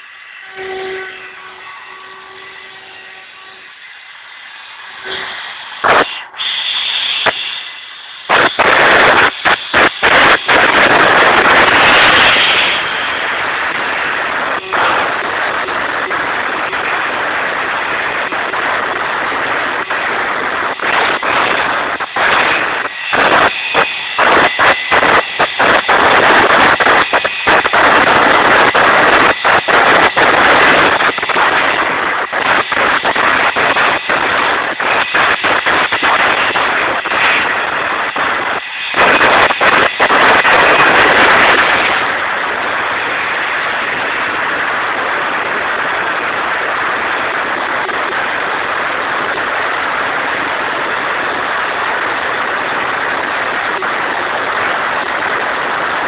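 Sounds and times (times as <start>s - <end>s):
router spindle cutting: 20.7s - 27.7s.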